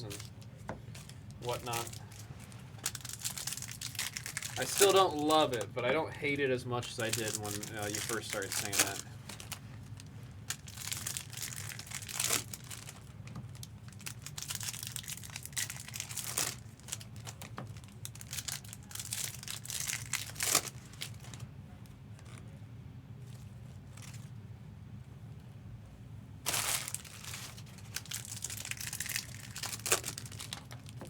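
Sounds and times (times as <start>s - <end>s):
wrappers crinkling and tearing: 0.0s - 5.7s, 6.8s - 21.5s, 22.2s - 22.4s, 23.2s - 24.4s, 26.4s - 31.0s.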